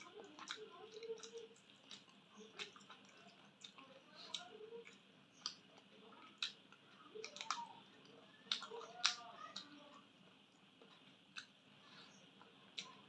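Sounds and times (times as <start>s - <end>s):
person chewing food: 0.0s - 13.0s
wet mouth clicks and smacks: 0.4s - 9.7s, 10.8s - 11.6s.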